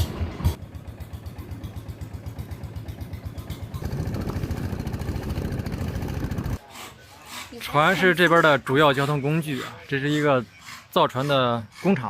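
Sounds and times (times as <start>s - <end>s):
boat engine chugging: 0.5s - 6.6s.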